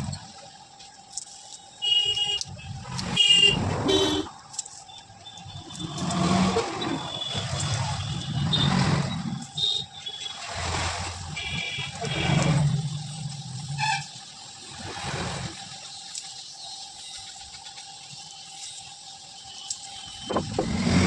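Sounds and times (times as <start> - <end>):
short high-pitched horn toots: 3.1 - 4.3
vehicles passing: 5.3 - 9.8.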